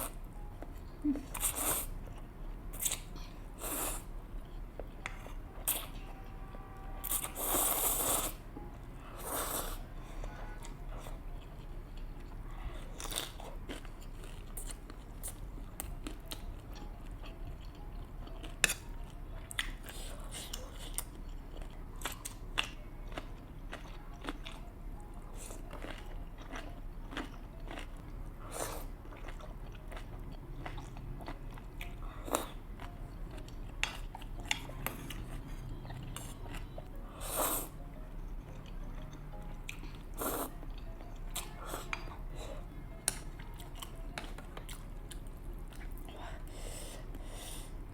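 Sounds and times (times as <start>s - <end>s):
wet chewing and crunching: 10.5s - 37.0s, 37.7s - 46.3s.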